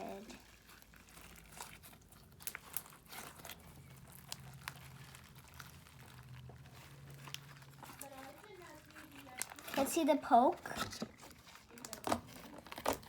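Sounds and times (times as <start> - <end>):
slime squeezed and stretched: 0.0 - 9.9.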